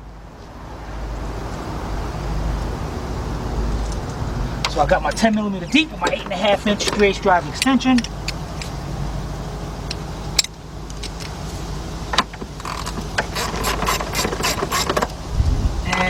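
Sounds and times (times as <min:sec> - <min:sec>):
hand ratchet clicking: 0:12.6 - 0:15.1.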